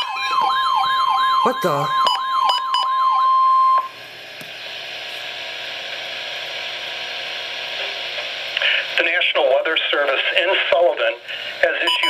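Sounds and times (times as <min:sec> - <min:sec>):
warbling siren-like alert: 0:00.0 - 0:03.8
steady alarm tone: 0:00.0 - 0:03.9
radio hiss: 0:07.6 - 0:11.9.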